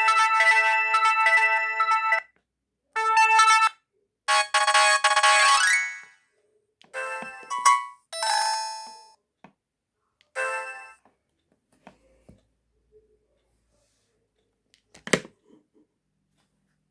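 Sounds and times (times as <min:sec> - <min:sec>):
bell-like phone chime: 0:07.0 - 0:09.2, 0:10.4 - 0:11.0.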